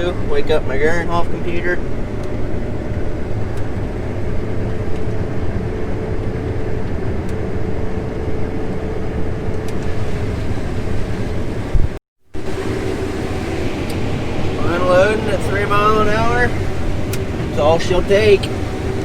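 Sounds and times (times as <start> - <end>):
combine harvester droning: 0.0 - 19.0
thin machine whine: 12.4 - 19.0.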